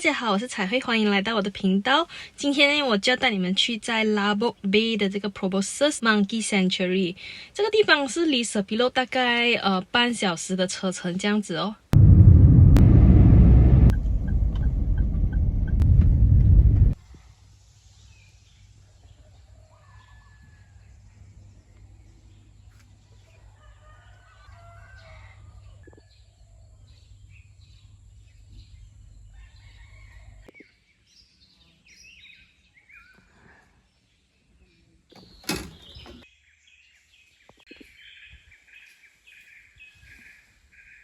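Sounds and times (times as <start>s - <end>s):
faint low hum: 12.0s - 17.0s
loud low rumble: 12.0s - 17.0s
birds chirping and calling: 35.2s - 37.1s.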